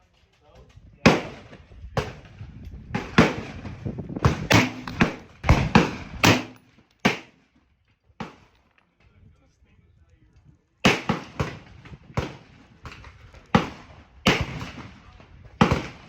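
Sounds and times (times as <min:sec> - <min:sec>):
gunshots with echo: 0:01.1 - 0:02.2, 0:03.0 - 0:07.4, 0:10.9 - 0:11.6, 0:12.2 - 0:15.0, 0:15.6 - 0:16.0.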